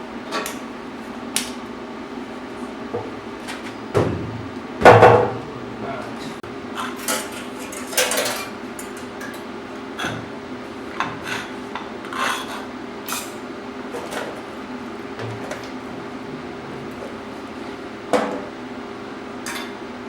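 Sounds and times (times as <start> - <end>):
steady low hum: 0.0 - 20.0
metal clanks and scrapes: 11.0 - 14.5.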